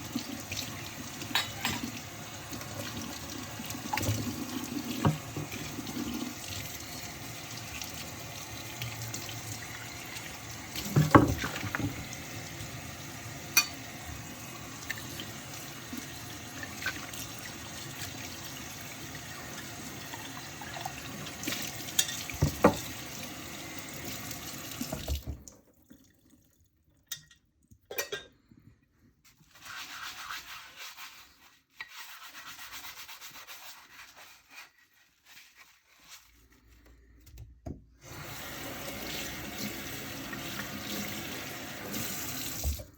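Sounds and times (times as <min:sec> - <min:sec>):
dishes clinking: 0:01.3 - 0:02.0, 0:13.6 - 0:13.8, 0:27.1 - 0:28.4
tap running: 0:03.6 - 0:06.2, 0:10.0 - 0:12.3, 0:22.3 - 0:22.9
rubbing dishes under water: 0:10.2 - 0:12.2.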